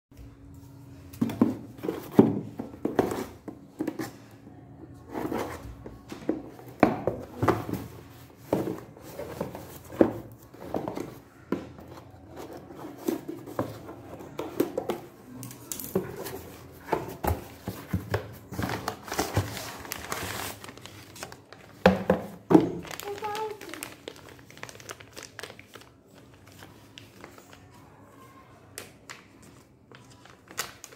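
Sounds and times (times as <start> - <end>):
packaging rustling: 15.6 - 21.8, 22.4 - 27.8.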